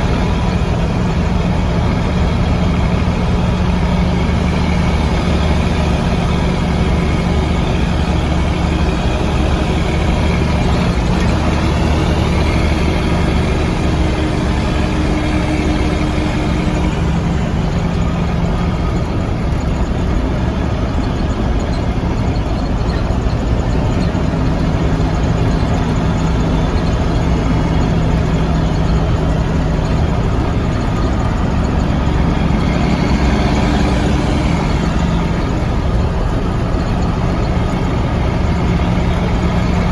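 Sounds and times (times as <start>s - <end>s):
diesel truck engine running: 0.0s - 39.9s.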